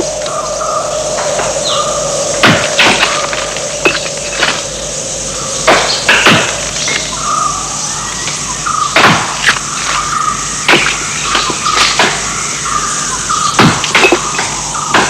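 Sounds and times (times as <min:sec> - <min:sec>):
bird chirps: 0:00.0 - 0:15.0
insects hissing: 0:00.0 - 0:15.0
sharp knocks: 0:02.4 - 0:04.7, 0:05.7 - 0:07.1, 0:09.0 - 0:12.3, 0:13.5 - 0:15.0.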